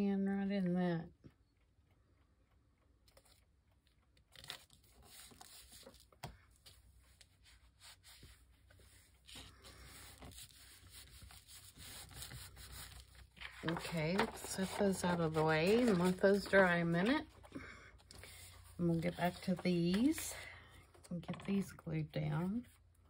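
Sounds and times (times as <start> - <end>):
paper rustling: 4.3 - 21.7.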